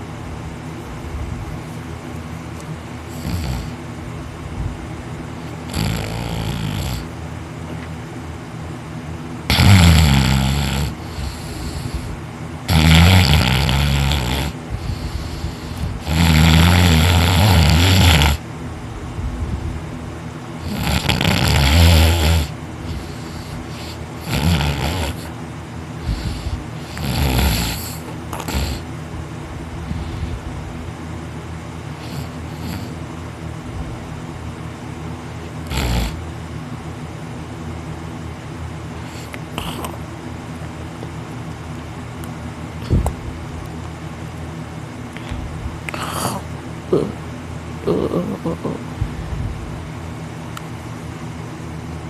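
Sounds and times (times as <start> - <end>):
man snoring: 3.1 - 3.8, 5.5 - 7.2, 9.5 - 18.4, 20.6 - 25.3, 26.0 - 28.9, 32.0 - 33.0, 35.6 - 36.2, 39.0 - 40.0, 45.9 - 47.2, 47.8 - 48.9.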